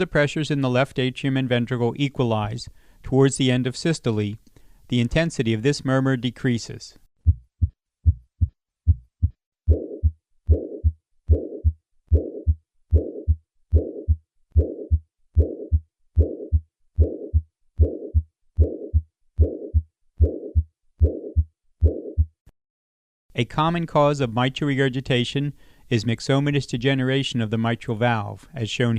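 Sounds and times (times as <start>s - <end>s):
heart murmur: 7.2s - 22.4s
heartbeat lub-dub: 7.2s - 22.4s.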